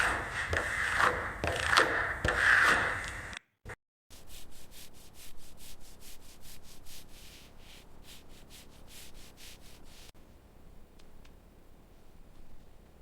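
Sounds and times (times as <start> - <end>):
rhythmic rubbing strokes: 4.1 - 10.2.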